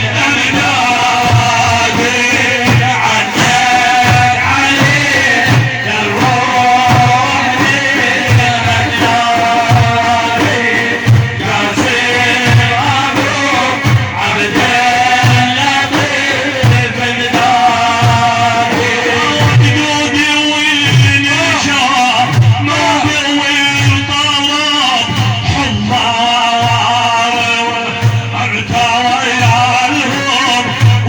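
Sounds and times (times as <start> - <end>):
man chanting: 0.0 - 31.0
repeating low drum beat: 0.0 - 31.0.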